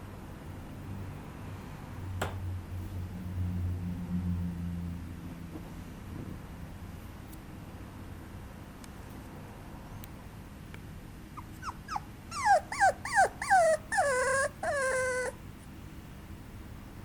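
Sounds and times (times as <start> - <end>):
puppy whining: 11.4 - 15.4
puppy yelping: 11.4 - 15.4.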